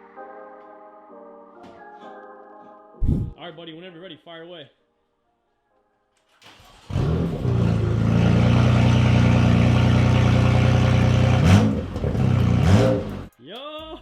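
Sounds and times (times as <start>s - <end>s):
car engine starting and revving: 6.4s - 13.3s.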